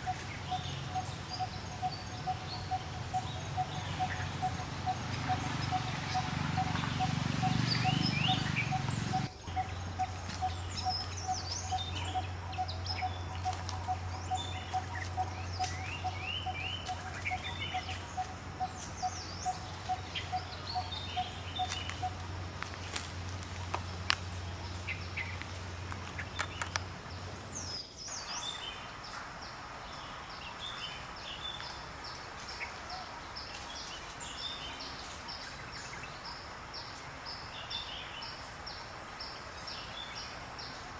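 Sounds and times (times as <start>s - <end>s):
repeated bird call: 0.0s - 22.4s
birds chirping and calling: 0.0s - 27.8s.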